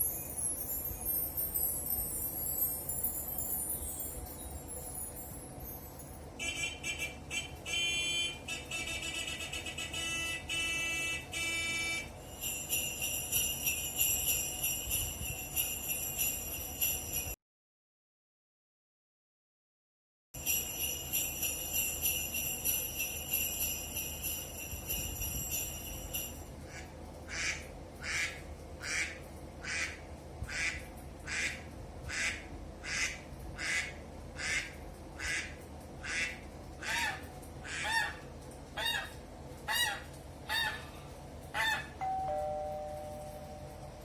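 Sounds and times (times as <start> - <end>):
bells jingling: 0.0 - 6.4, 12.1 - 17.4, 20.4 - 26.6, 42.0 - 44.0
two-note doorbell chime: 10.0 - 17.4, 20.4 - 26.5, 42.0 - 44.0.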